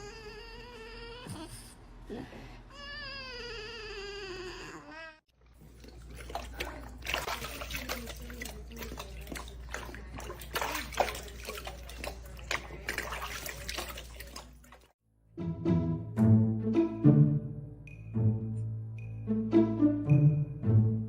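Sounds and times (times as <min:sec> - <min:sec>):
water splashing and sloshing: 0:05.3 - 0:15.0.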